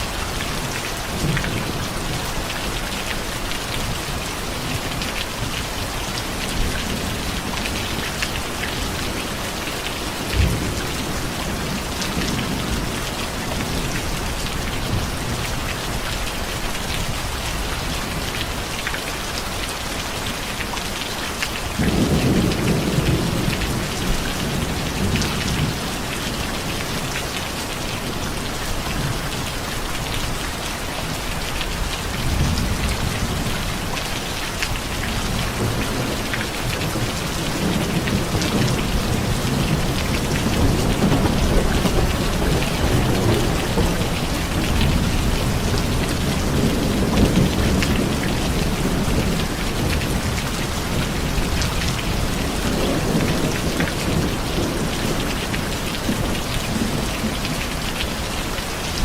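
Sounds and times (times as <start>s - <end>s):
heavy rain: 0.0s - 59.0s
rolling thunder: 34.8s - 57.6s.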